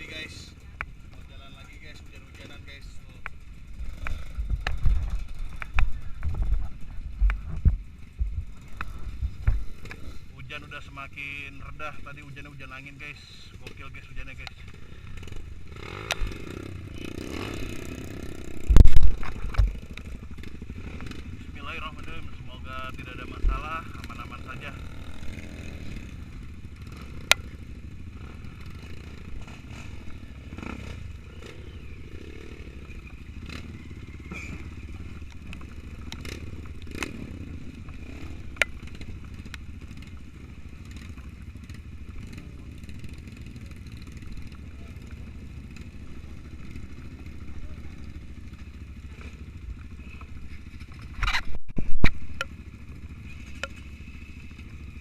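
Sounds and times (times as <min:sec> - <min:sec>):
motorcycle engine running: 0:00.0 - 0:55.0
clicks and clatter: 0:18.6 - 0:20.2, 0:49.2 - 0:52.6.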